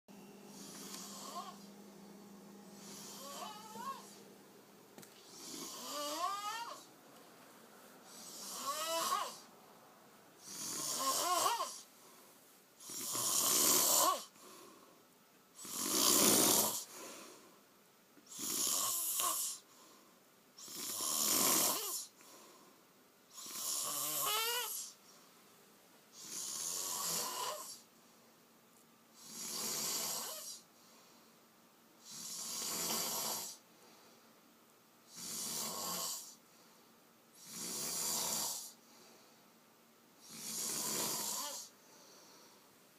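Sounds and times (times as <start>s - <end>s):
man snoring heavily: 0.6s - 1.7s, 2.8s - 4.2s, 5.3s - 6.9s, 8.1s - 9.5s, 10.4s - 11.9s, 12.8s - 14.4s, 15.6s - 17.1s, 18.3s - 19.6s, 20.6s - 22.1s, 23.3s - 25.0s, 26.2s - 27.8s, 29.2s - 30.6s, 32.0s - 33.6s, 35.1s - 36.4s, 37.4s - 38.8s, 40.2s - 41.7s.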